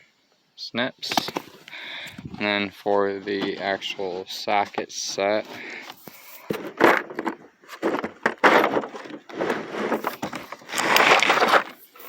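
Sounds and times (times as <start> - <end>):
socket set box scraping and clattering: 1.1 - 1.7, 3.2 - 12.0
sockets shifting inside box: 1.1 - 1.7, 6.5 - 12.0.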